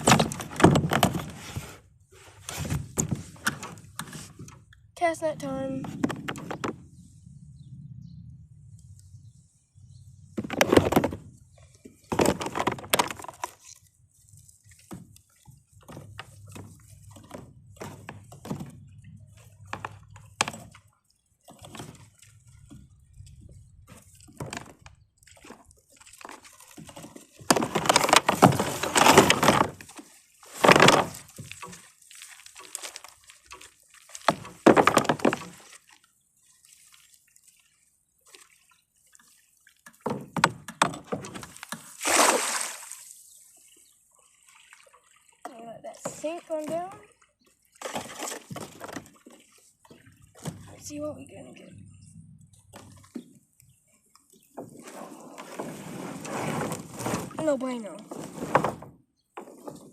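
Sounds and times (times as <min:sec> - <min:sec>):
water splashing rushes: 0:41.4 - 0:43.4.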